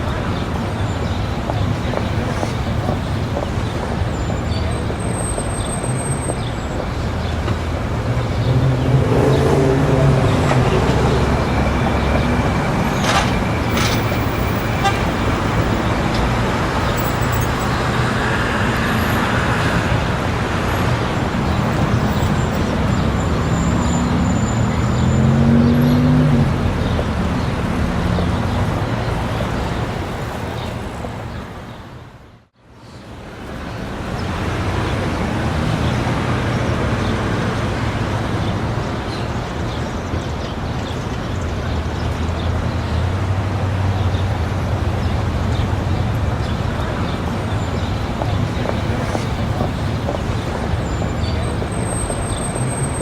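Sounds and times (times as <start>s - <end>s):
traffic noise: 0.0s - 53.0s
crowd voices: 46.6s - 53.0s.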